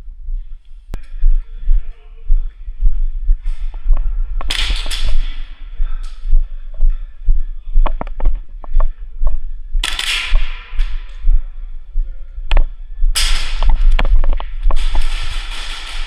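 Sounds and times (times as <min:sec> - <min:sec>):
heavy low thumps: 0:00.0 - 0:15.5
sharp clicks: 0:09.8 - 0:11.2.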